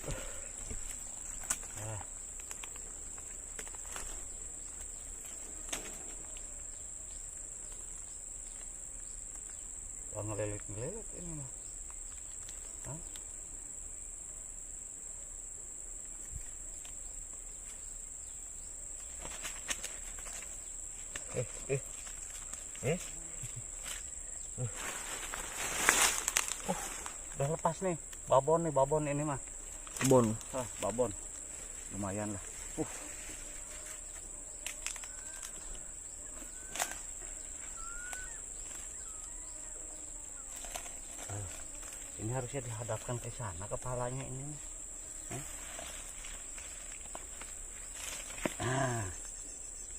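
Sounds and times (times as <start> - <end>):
insects chirping: 0.0 - 49.9
faint clicks and rustles: 0.6 - 6.5
rising bird whistles: 37.7 - 38.4, 39.0 - 39.5.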